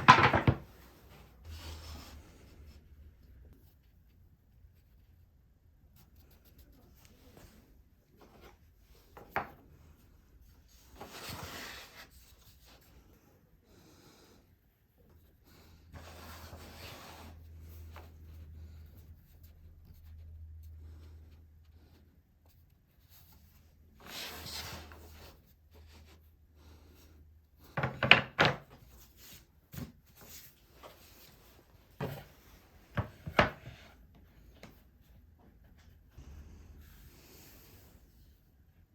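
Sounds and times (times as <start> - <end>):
wood knocking: 0.0 - 0.6.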